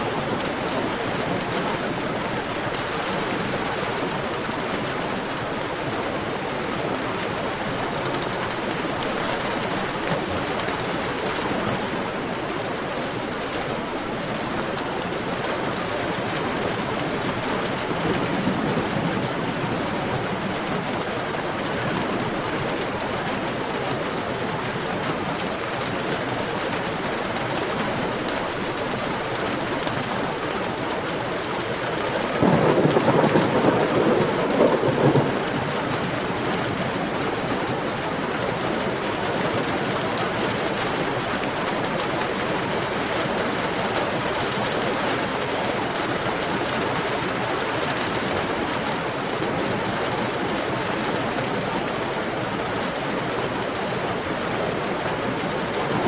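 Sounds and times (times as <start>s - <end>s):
heavy rain falling: 0.0s - 56.0s
thunder rumble: 32.4s - 36.2s.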